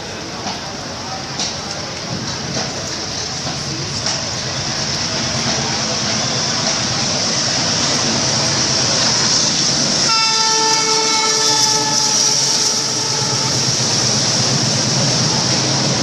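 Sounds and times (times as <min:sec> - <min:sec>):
train rattling on rails: 0:00.0 - 0:16.0
locomotive horn blast: 0:10.0 - 0:13.8.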